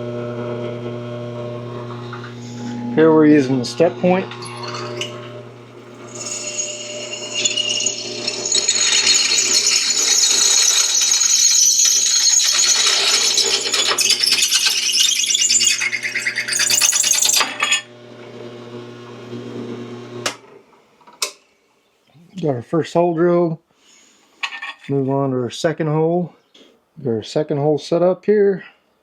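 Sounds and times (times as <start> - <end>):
drill press motor hum: 0.0 - 20.5
drill bit grinding screech on steel: 0.3 - 18.0.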